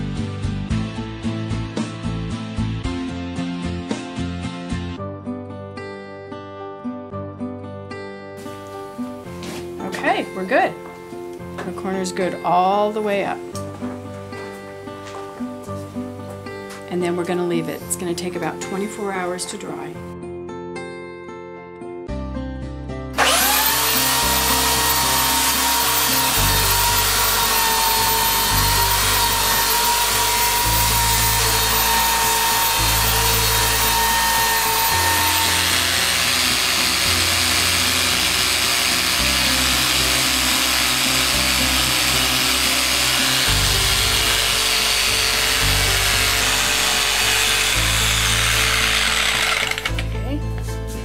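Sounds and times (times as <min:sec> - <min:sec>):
background music with bass line: 0:00.0 - 0:05.9, 0:21.9 - 0:51.0
high motor whine: 0:23.2 - 0:50.1
power tool running: 0:23.2 - 0:50.3.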